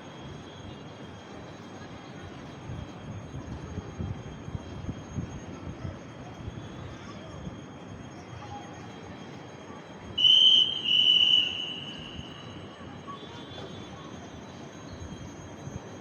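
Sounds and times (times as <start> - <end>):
bird whistled call: 10.2 - 12.4.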